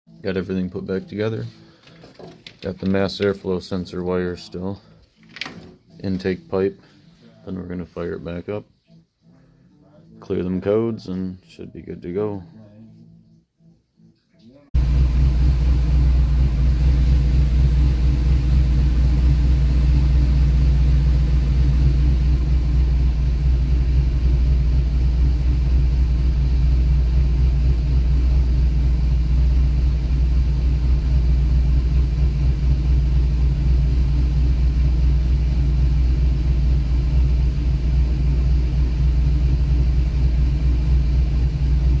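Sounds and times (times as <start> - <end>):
car engine idling: 14.8 - 42.0.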